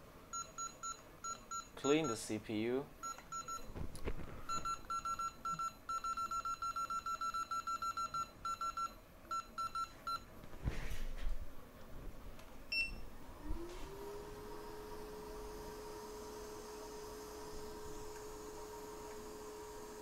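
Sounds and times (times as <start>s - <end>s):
motor whine spinning up: 13.0s - 20.0s.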